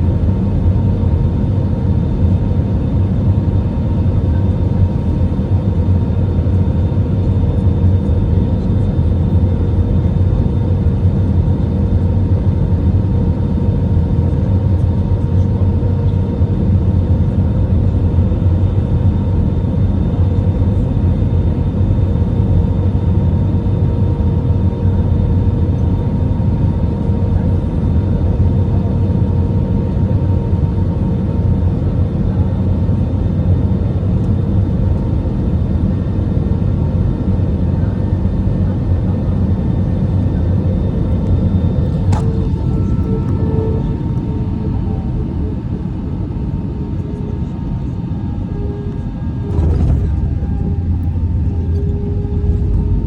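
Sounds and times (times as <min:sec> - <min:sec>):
jet engine and airflow rumble: 0:00.0 - 0:53.0
thin steady whine: 0:40.1 - 0:53.0.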